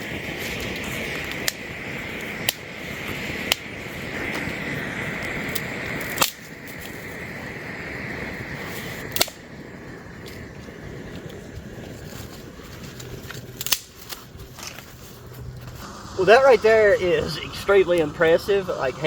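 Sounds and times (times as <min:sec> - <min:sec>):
flare burning with a hiss: 0:00.0 - 0:19.0
wood cracking: 0:11.8 - 0:15.8.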